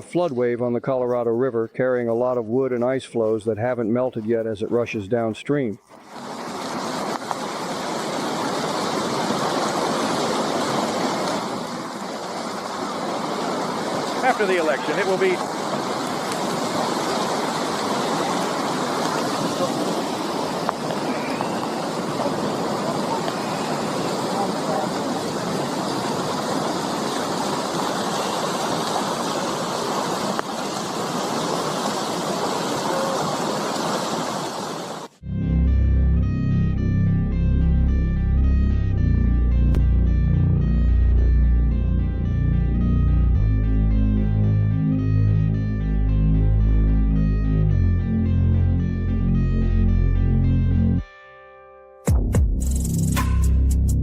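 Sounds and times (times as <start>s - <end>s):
floodwater rushing: 5.8s - 35.2s.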